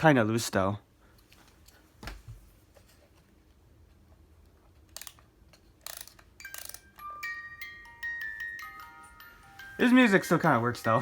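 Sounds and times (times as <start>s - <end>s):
mechanism scraping clicks: 4.8s - 6.9s
music box playing: 6.4s - 11.0s.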